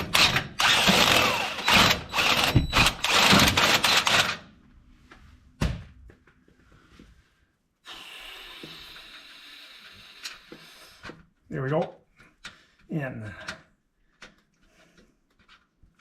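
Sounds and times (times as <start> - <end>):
power drill boring: 0.0 - 4.4.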